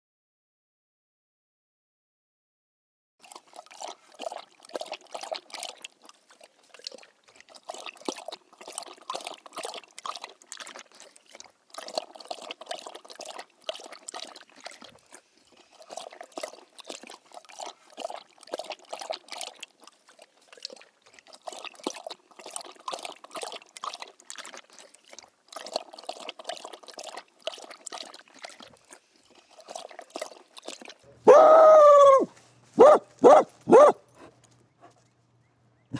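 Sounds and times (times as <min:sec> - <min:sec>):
dog lapping water: 0:03.2 - 0:32.2, 0:32.8 - 0:35.1
dog yelping: 0:31.3 - 0:34.0.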